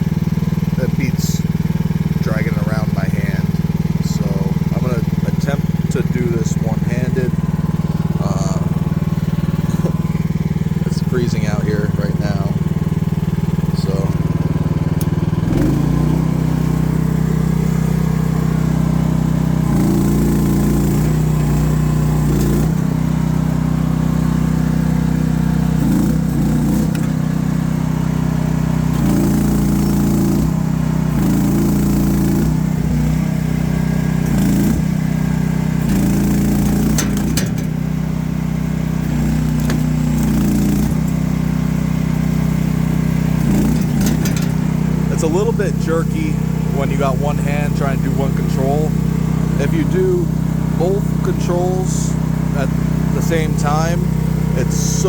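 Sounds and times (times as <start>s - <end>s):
excavator engine loading up: 3.9s - 29.4s, 32.2s - 46.7s.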